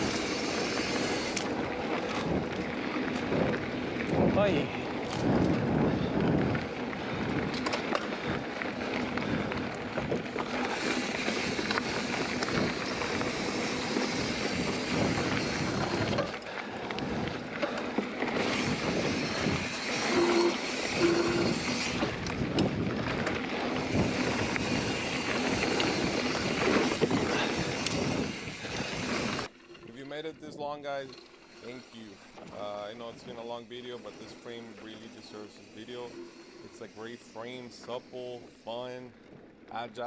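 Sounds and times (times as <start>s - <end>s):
wind rush on microphone: 0.0s - 17.6s, 18.3s - 29.5s
bike clicks and rattles: 0.0s - 36.8s.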